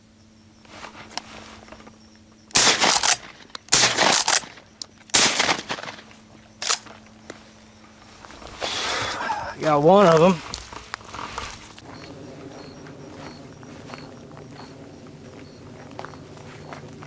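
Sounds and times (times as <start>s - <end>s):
shotgun shots: 2.5s - 6.8s.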